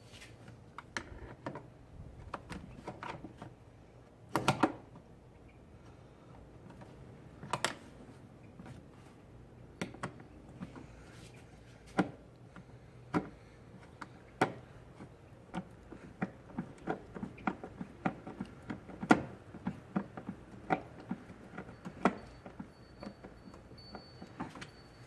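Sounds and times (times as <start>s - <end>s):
hand tools clicking and knocking: 11.9s - 25.0s.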